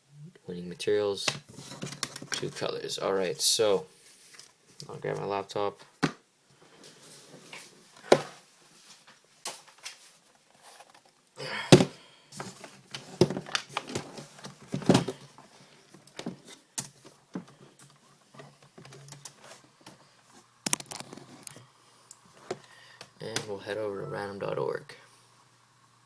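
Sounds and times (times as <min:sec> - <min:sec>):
laptop thumps: 0:13.0 - 0:15.3.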